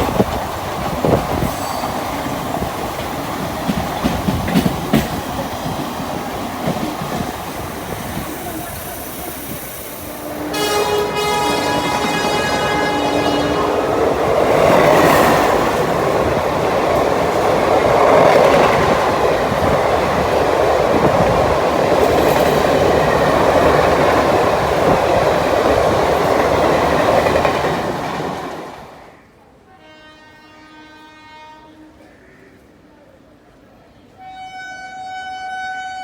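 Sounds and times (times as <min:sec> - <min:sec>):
train wheels clickety-clack: 0:00.0 - 0:10.0, 0:14.4 - 0:28.9
faint locomotive horn: 0:10.0 - 0:15.6, 0:29.7 - 0:32.6, 0:34.0 - 0:36.0.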